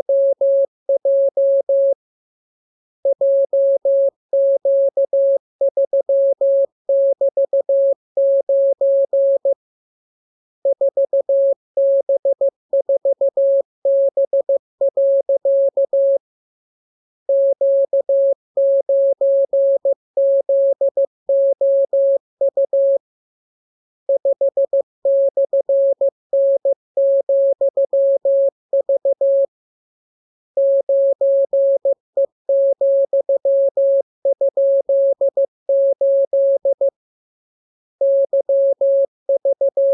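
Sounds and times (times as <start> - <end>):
morse code tone: 39.4 - 39.9.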